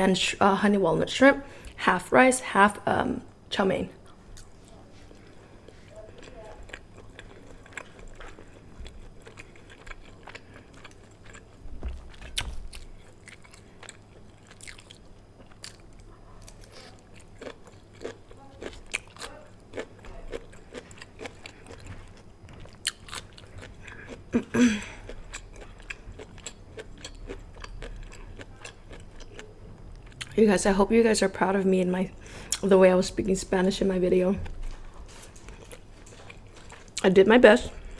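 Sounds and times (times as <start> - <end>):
chewing and biting food: 4.1 - 24.3, 25.0 - 30.4, 34.4 - 37.0.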